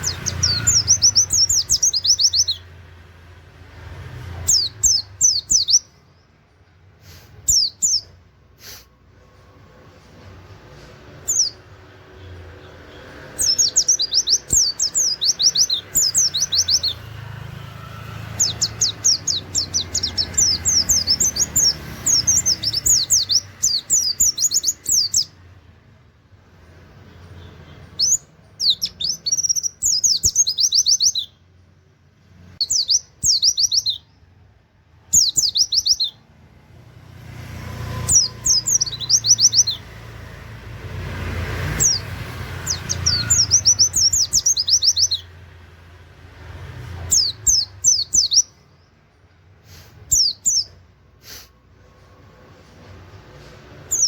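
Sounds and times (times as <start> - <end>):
bird singing fast sweeping notes: 0.0 - 2.9, 12.9 - 25.4, 27.9 - 31.4, 37.7 - 40.6, 41.4 - 45.6, 46.4 - 48.7.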